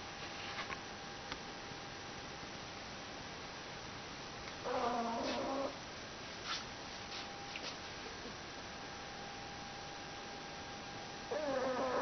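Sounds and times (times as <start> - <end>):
dog snoring: 4.6 - 5.8, 11.3 - 12.0.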